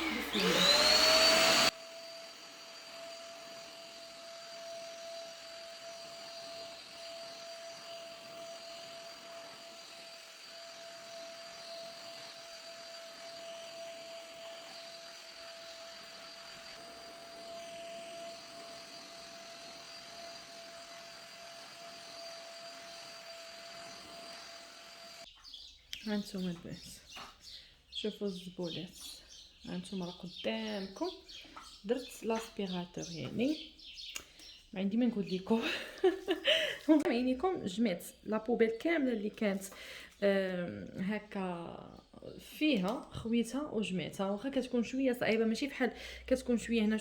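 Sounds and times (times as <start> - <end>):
vacuum cleaner motor whining: 0.0 - 25.3, 35.2 - 37.2.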